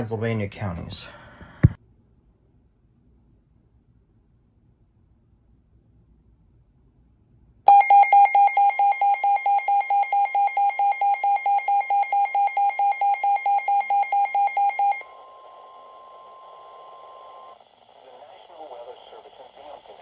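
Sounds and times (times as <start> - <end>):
rapid pulsing alert beeps: 7.7 - 15.0
steady alarm tone: 7.7 - 17.9
radio static: 15.1 - 20.0.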